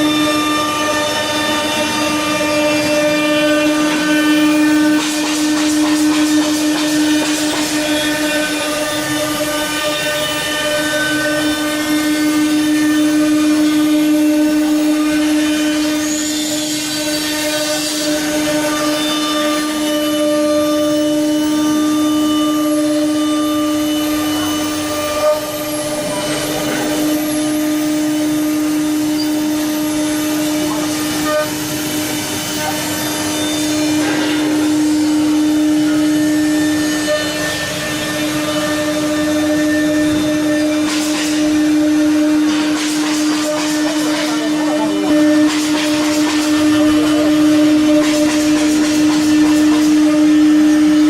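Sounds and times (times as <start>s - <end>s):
spindle high whine: 0.0s - 51.0s
cutting noise: 40.1s - 50.1s.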